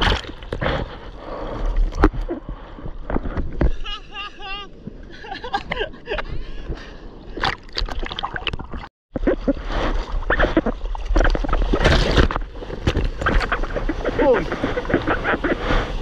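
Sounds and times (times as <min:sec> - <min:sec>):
seawater sloshing and splashing: 0:07.3 - 0:16.0.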